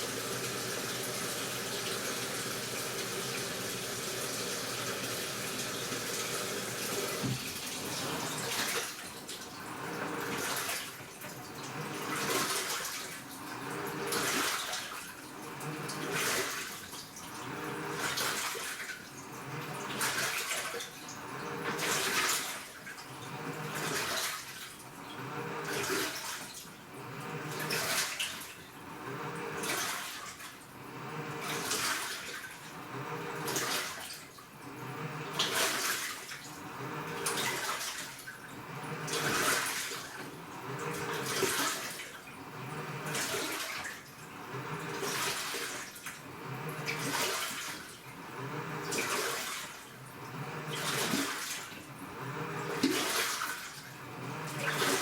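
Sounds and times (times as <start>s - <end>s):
washing machine water churning: 0.0s - 55.0s
low motor hum: 38.5s - 39.5s, 40.2s - 41.4s, 42.4s - 43.3s, 44.2s - 45.1s, 46.3s - 47.2s, 48.2s - 49.0s, 50.1s - 53.0s, 54.0s - 55.0s.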